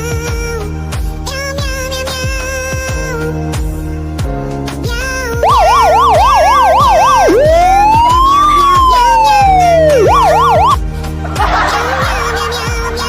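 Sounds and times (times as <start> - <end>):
background music: 0.0 - 13.0
warbling siren: 5.4 - 10.8.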